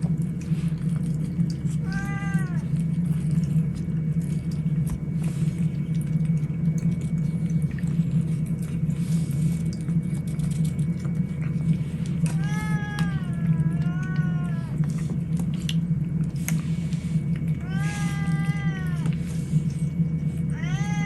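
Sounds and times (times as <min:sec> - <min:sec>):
cat meowing: 0:01.7 - 0:02.8, 0:12.3 - 0:14.9, 0:17.6 - 0:19.2, 0:20.4 - 0:21.0.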